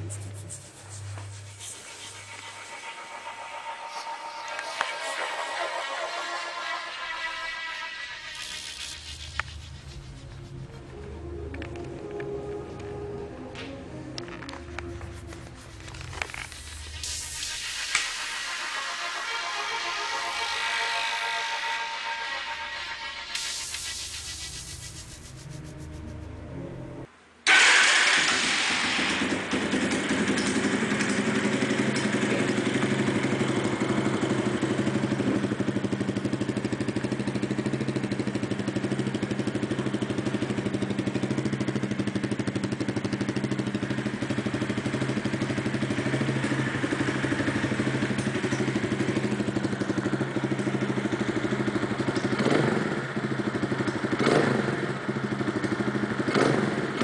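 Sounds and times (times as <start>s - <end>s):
motorcycle engine idling: 29.1s - 57.0s.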